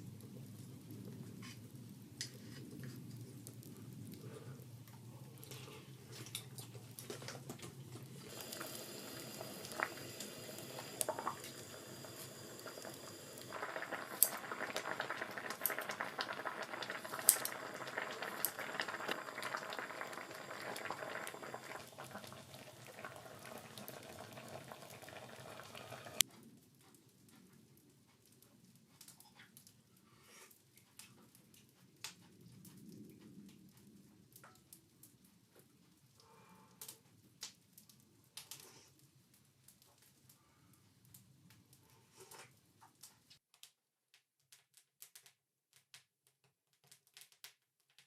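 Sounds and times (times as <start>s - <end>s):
soup boiling hard with bubbling: 6.8s - 26.3s.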